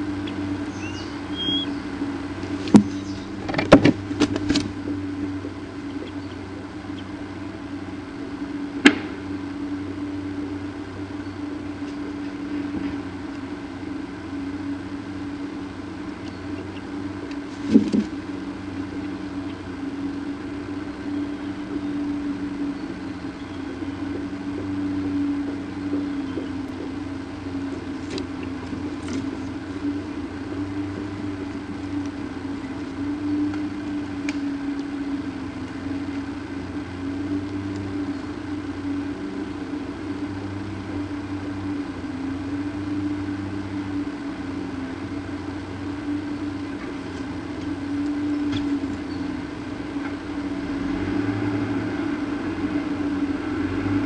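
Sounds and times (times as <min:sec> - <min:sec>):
low mechanical hum: 0:00.0 - 0:54.0
faint ticks: 0:31.5 - 0:34.9, 0:37.4 - 0:38.8, 0:46.2 - 0:49.1.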